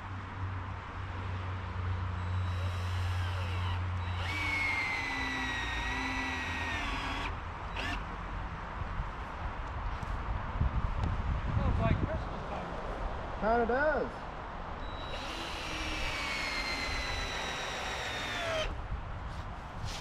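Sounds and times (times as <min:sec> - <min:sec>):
chainsaw engine running: 0:02.5 - 0:07.2.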